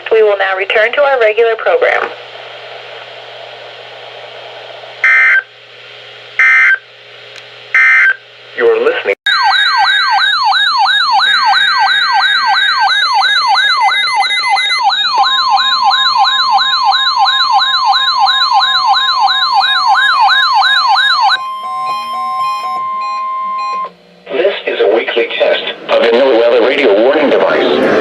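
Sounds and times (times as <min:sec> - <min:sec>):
sweeping siren-like alert tone: 0:02.4 - 0:05.5, 0:09.3 - 0:24.0
steady warning alarm tone: 0:05.0 - 0:05.5, 0:06.4 - 0:06.9, 0:07.7 - 0:08.2, 0:09.3 - 0:27.2.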